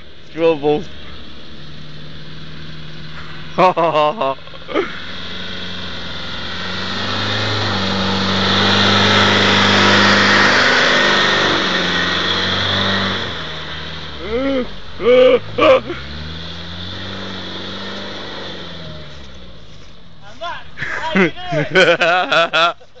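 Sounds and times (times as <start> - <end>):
engine revving hard: 0.4 - 19.7
person shouting: 14.2 - 15.8, 20.3 - 21.7.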